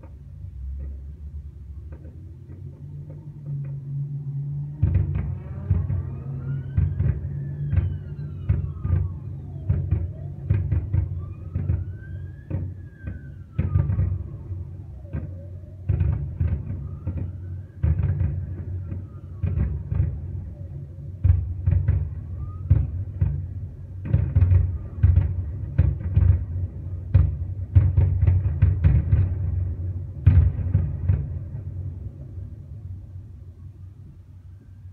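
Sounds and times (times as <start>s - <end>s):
deep rumble: 0.0s - 34.9s
fireworks bangs and booms: 4.8s - 32.8s
whistling fireworks: 4.9s - 32.2s.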